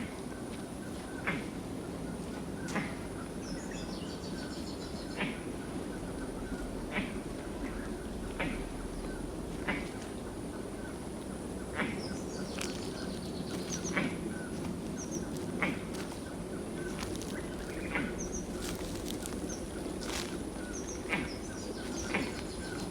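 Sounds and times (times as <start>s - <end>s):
birds chirping: 0.0s - 22.9s
steady low hum: 0.0s - 22.9s
footsteps on a trail: 11.2s - 22.9s.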